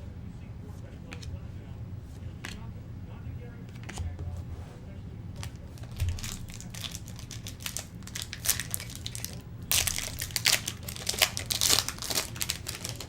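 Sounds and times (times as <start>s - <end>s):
wrapper crinkling and tearing: 5.5s - 13.0s.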